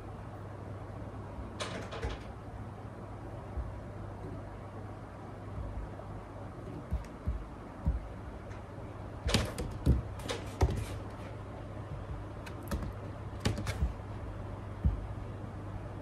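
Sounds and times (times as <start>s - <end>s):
steady low hum: 0.0s - 16.0s
light clicks and knocks: 6.7s - 11.2s.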